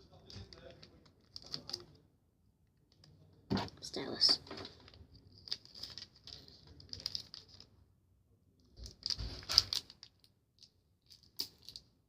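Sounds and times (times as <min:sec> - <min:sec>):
small objects clicking and tapping: 0:08.8 - 0:11.9.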